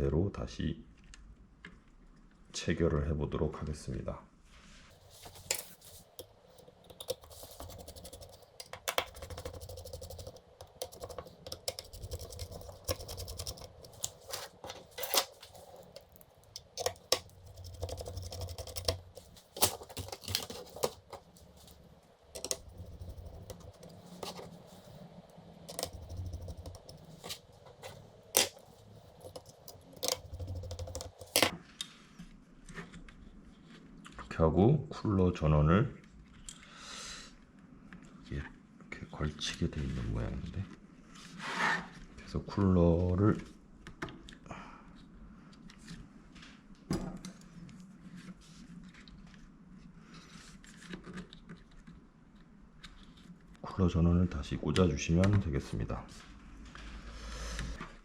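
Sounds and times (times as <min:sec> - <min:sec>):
clicks and taps of small parts: 0:05.3 - 0:21.7, 0:22.4 - 0:24.5, 0:25.7 - 0:31.5.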